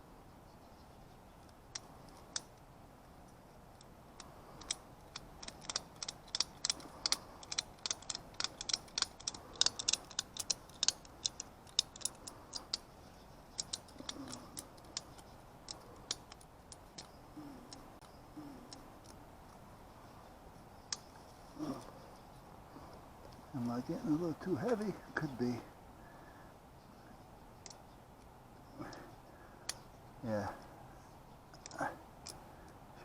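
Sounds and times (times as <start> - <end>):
ratchet strap clicking: 4.2 - 17.8.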